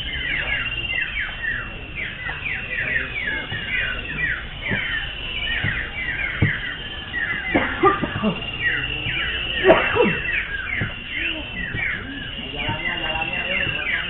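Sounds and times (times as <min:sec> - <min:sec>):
birds whistling: 0:00.0 - 0:14.0
low knocks: 0:03.4 - 0:14.0.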